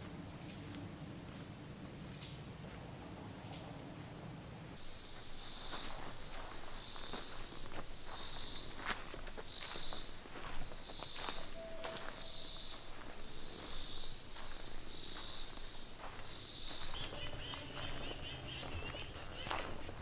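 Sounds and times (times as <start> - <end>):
insect high-pitched trill: 4.8 - 20.0
insect pulsing calls: 4.8 - 20.0.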